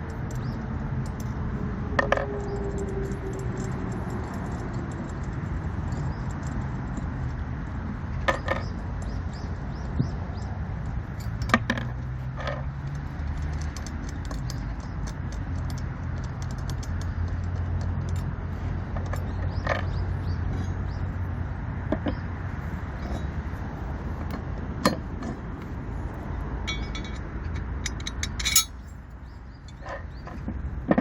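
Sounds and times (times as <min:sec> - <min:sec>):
metal parts clinking: 0:26.7 - 0:29.0.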